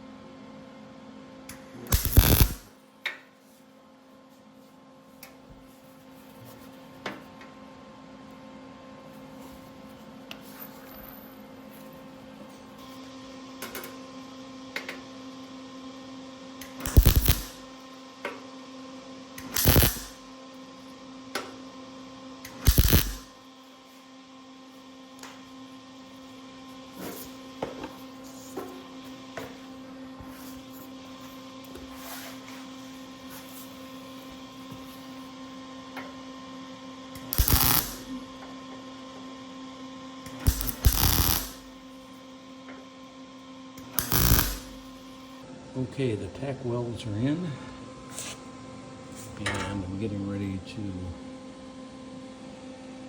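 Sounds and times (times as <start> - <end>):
steady electrical hum: 0.0 - 53.0
short tack weld bursts: 1.9 - 2.7, 16.8 - 17.6, 19.4 - 20.2, 22.6 - 23.3, 37.3 - 38.1, 40.4 - 41.7, 44.0 - 44.9.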